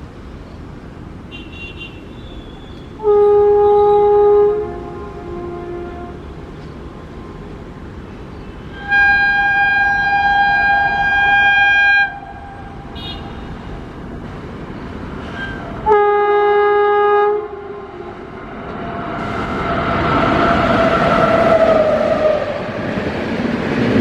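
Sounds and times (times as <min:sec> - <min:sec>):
rumble of approaching train: 0:00.0 - 0:24.0
locomotive horn honking: 0:01.3 - 0:06.5, 0:08.4 - 0:14.0, 0:15.2 - 0:19.5.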